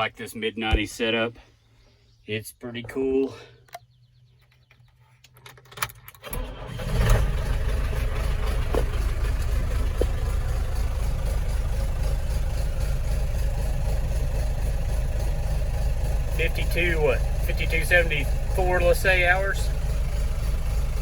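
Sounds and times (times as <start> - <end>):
tractor diesel engine starting: 5.5 - 21.0.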